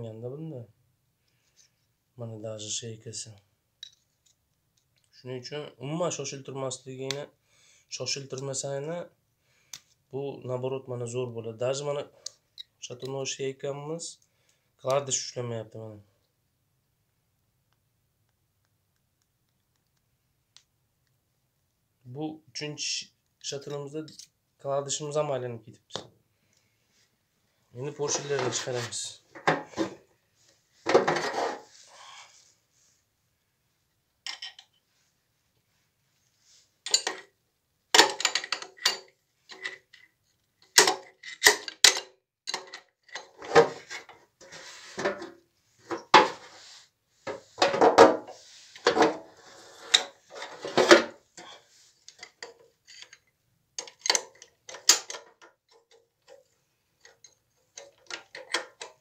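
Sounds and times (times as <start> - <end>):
metal engine parts clinking: 36.9 - 37.3.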